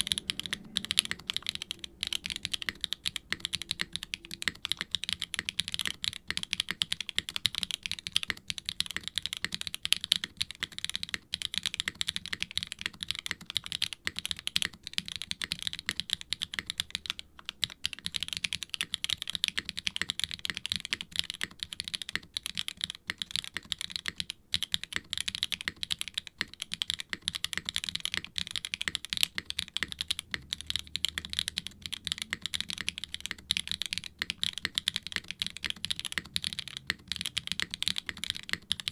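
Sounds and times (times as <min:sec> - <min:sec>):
typing on mechanical keyboard: 0:00.0 - 0:38.9.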